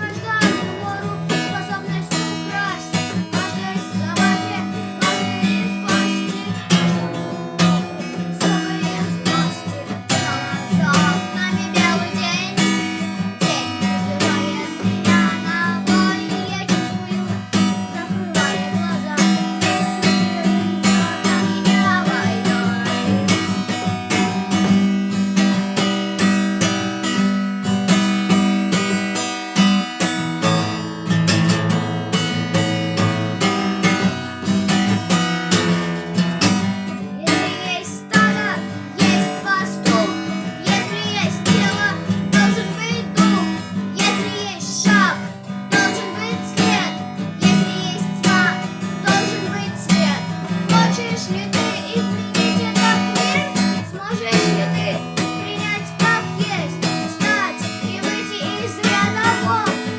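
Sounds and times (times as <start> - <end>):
acoustic guitar strumming: 0.0 - 59.9.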